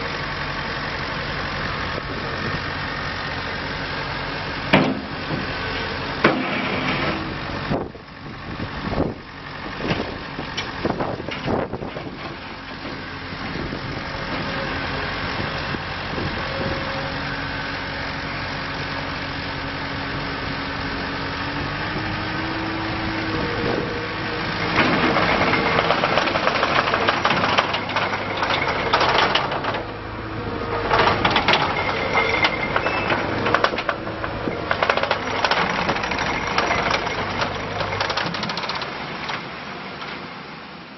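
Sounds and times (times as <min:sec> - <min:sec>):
diesel engine running: 0:00.0 - 0:40.9
clanks and knocks: 0:04.7 - 0:05.5, 0:06.2 - 0:07.3, 0:24.6 - 0:30.0, 0:30.7 - 0:39.4.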